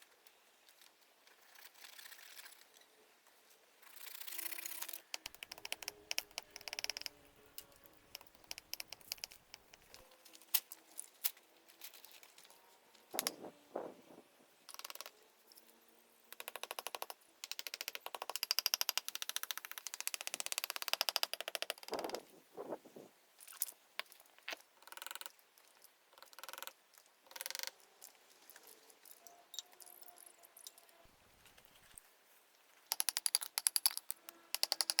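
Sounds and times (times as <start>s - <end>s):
rapid ratchet-like clicking: 32.9s - 35.0s.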